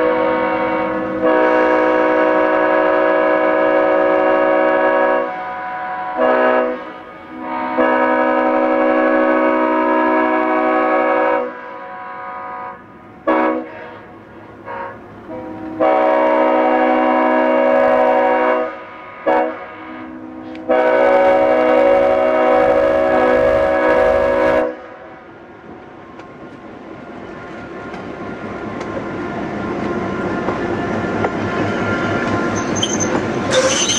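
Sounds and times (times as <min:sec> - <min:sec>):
locomotive air horn chord: 0:00.0 - 0:25.1
moving train rumble: 0:00.0 - 0:33.9.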